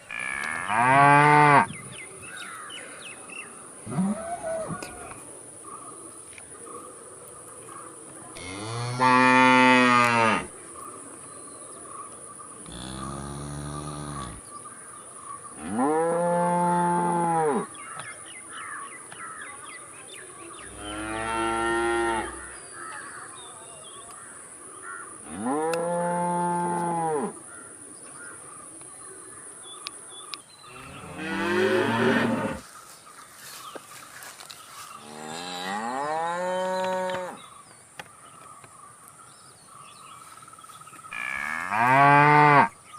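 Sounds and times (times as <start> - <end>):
cows mooing: 12.6 - 14.4, 30.8 - 32.6, 41.2 - 42.7.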